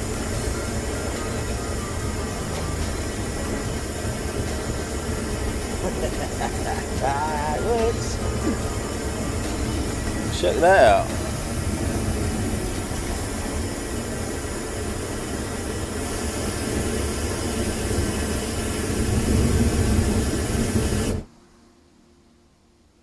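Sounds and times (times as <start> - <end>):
propane burner flame rushing: 0.0 - 21.3.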